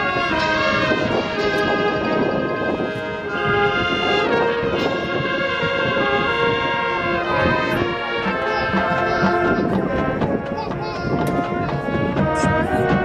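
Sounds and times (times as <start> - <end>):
brass chords: 0.0 - 13.0
marching drums: 7.2 - 13.0.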